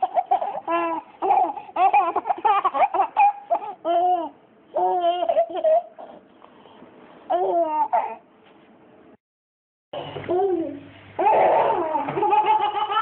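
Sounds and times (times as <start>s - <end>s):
baby laughing: 0.0s - 6.2s, 7.3s - 8.2s, 10.3s - 13.0s.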